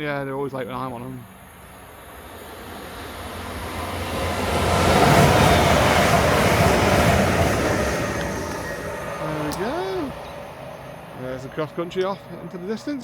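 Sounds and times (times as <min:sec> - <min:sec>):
train passing at speed: 0:00.0 - 0:13.0.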